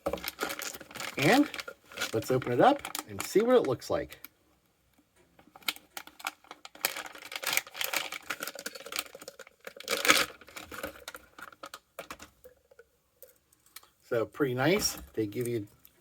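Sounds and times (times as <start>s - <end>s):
packaging crinkling and tearing: 0.0s - 3.9s, 5.6s - 12.3s.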